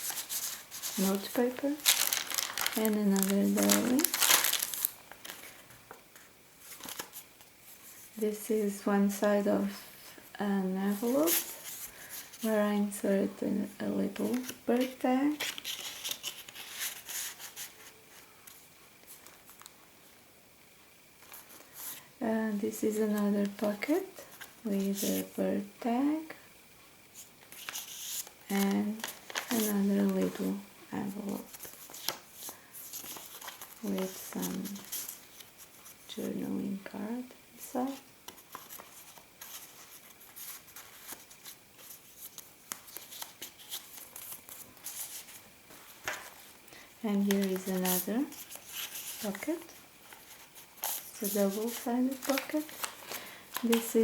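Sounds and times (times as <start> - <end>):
paper rustling: 0.0 - 7.2, 14.3 - 19.7, 27.4 - 30.5, 31.2 - 36.0, 38.3 - 54.0.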